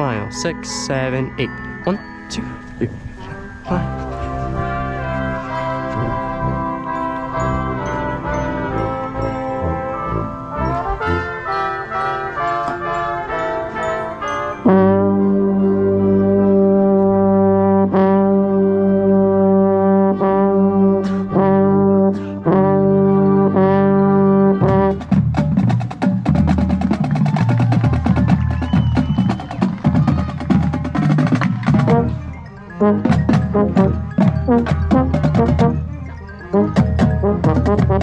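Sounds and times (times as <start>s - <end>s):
marching band brass: 2.5s - 38.0s
fast percussion strokes: 24.7s - 38.0s.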